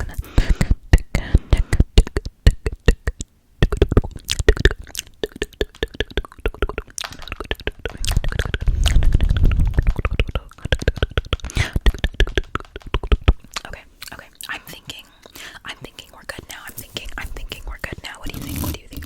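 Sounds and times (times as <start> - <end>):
low rumbling: 7.4 - 13.4.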